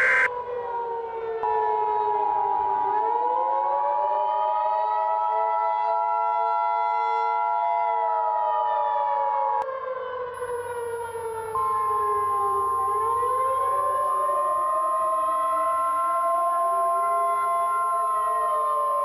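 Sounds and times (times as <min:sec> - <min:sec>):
steady alert tone: 0:00.0 - 0:00.3
two-tone attention signal: 0:00.0 - 0:00.3
civil defense siren wailing: 0:00.0 - 0:19.0.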